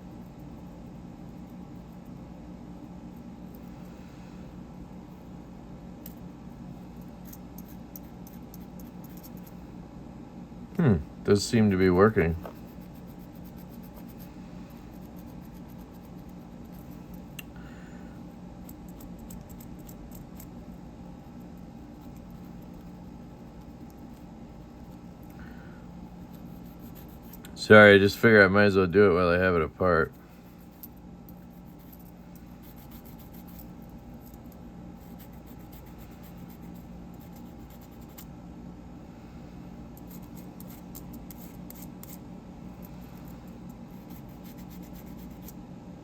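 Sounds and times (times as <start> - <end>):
steady low hum: 0.0 - 46.0
eraser scratching on metal: 44.0 - 45.5.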